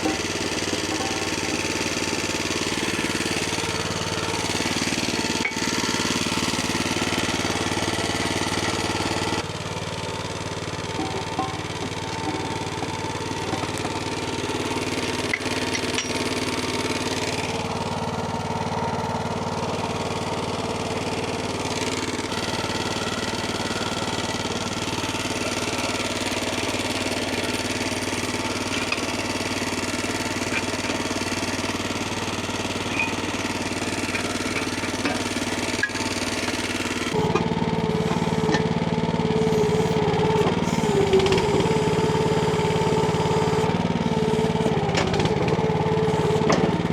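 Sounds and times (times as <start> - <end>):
engine running: 0.0 - 46.9.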